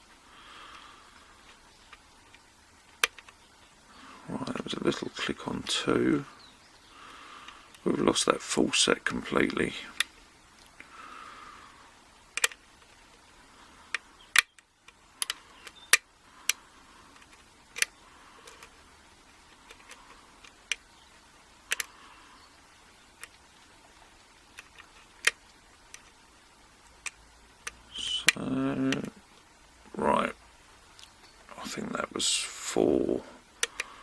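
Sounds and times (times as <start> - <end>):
lock picks clicking and scraping: 12.3 - 12.6, 21.7 - 21.9.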